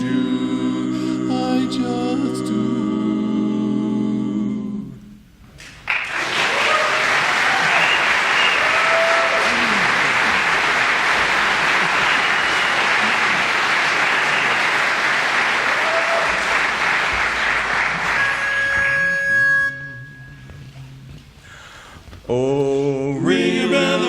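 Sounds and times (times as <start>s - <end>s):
audience applauding and cheering: 5.6s - 19.2s
brief steady tone: 18.2s - 20.7s.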